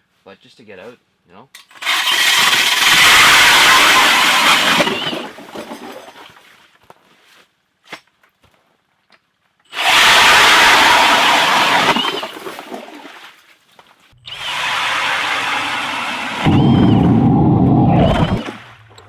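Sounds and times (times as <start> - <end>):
powered ice auger drilling: 1.7 - 6.3, 9.7 - 13.0, 14.2 - 18.7.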